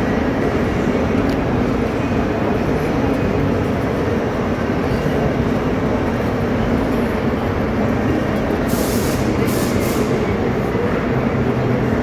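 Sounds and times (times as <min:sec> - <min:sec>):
indistinct crowd noise: 0:00.0 - 0:12.0
short hiss: 0:08.7 - 0:10.1.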